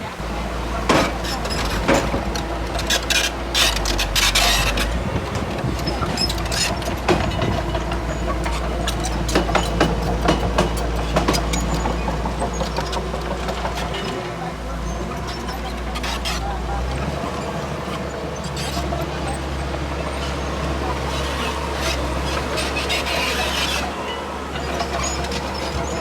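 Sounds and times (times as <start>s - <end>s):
bulldozer diesel engine running: 0.0s - 26.0s
steel tracks clanking: 0.0s - 26.0s.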